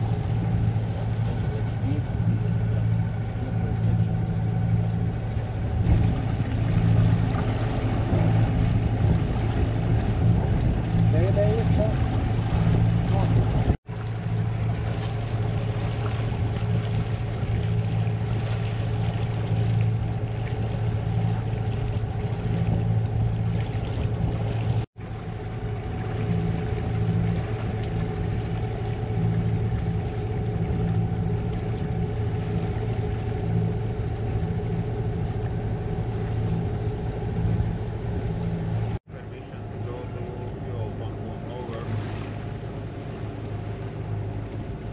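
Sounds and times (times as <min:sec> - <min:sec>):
boat engine humming: 0:00.0 - 0:44.9
water wash: 0:00.0 - 0:44.9.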